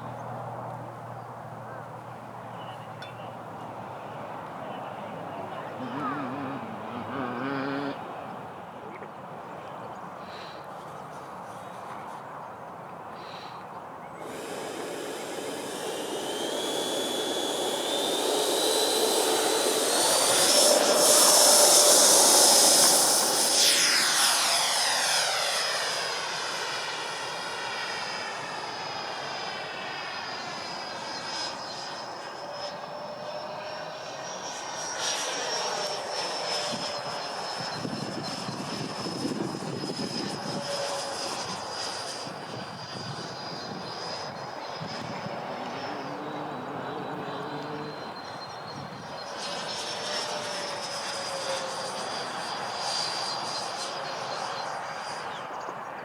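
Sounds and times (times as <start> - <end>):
model jet fans whining: 0.0 - 8.6, 9.8 - 56.0
jet passing with rushing whoosh: 14.2 - 29.5, 36.4 - 55.3.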